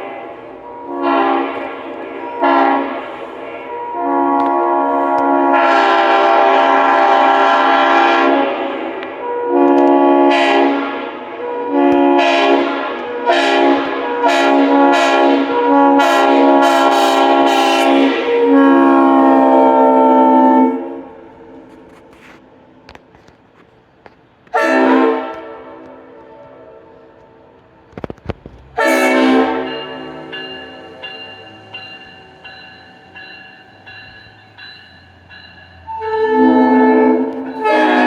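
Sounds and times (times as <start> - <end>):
train air horn blasts: 0.0 - 23.0, 24.5 - 27.5, 28.6 - 38.0.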